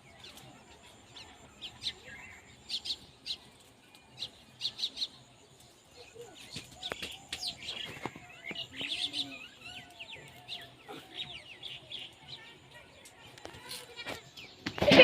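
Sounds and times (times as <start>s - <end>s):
lower bird calls: 6.0s - 12.2s.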